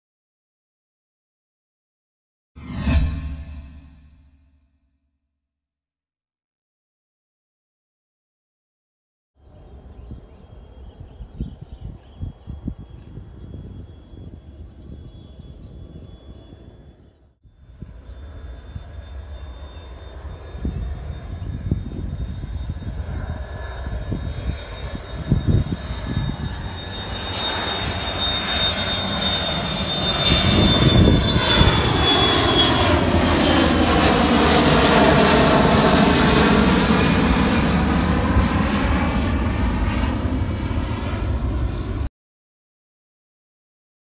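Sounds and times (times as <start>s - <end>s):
jet engine roar: 2.6s - 4.4s, 9.5s - 42.1s
jet engine fan whine: 9.5s - 42.1s.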